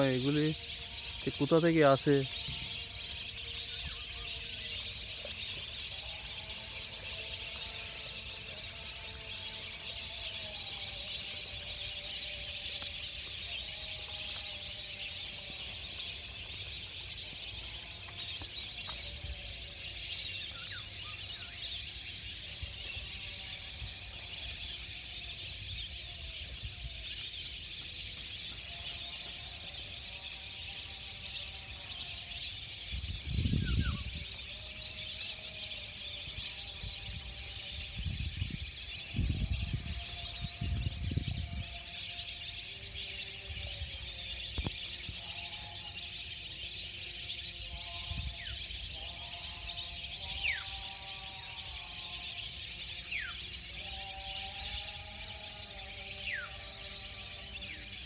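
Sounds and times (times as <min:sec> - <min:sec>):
waterbirds calling: 0:00.0 - 0:32.8
wind buffeting microphone: 0:32.9 - 0:34.3, 0:37.1 - 0:41.8.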